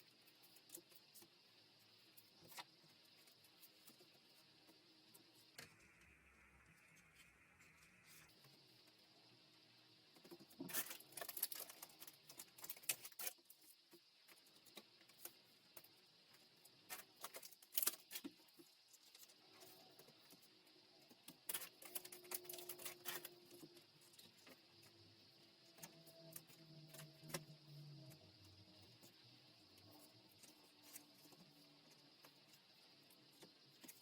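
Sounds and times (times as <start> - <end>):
plastic sleeves rustling: 10.5 - 13.6.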